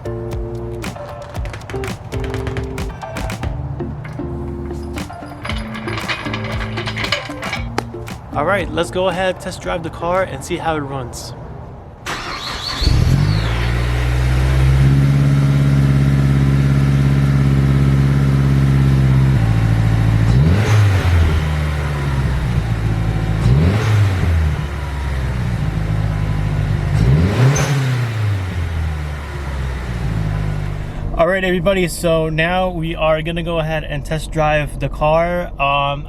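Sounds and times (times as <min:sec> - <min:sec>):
car engine idling and revving: 0:12.1 - 0:31.2.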